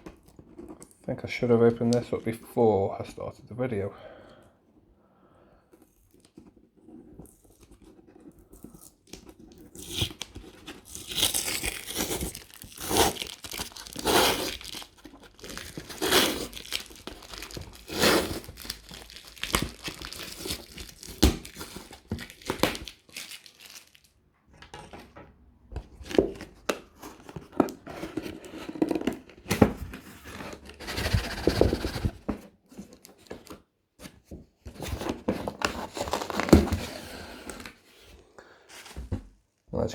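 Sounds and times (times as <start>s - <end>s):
cardboard packaging tearing: 6.9s - 24.1s, 34.7s - 37.8s
packing material crinkling: 7.2s - 24.2s.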